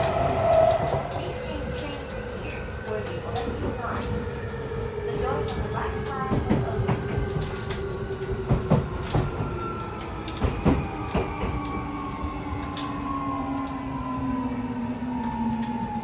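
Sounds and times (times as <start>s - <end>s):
train inverter and motors whining: 0.0s - 16.0s.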